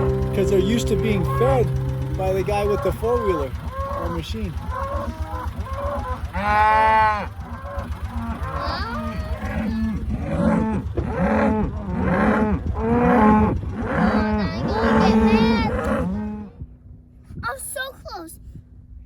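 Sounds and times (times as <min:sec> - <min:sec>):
low steady rumble: 0:00.0 - 0:17.8
cattle mooing: 0:02.7 - 0:16.6.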